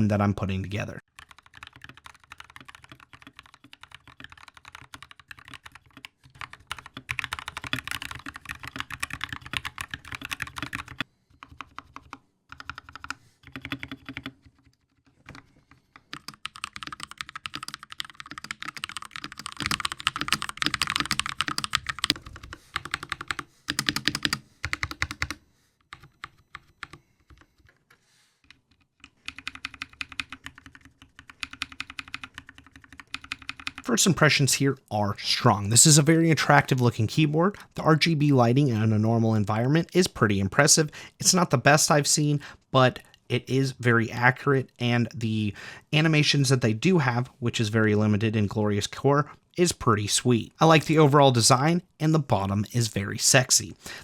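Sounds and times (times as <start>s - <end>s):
mechanical keyboard typing: 1.1s - 27.9s, 28.5s - 33.9s.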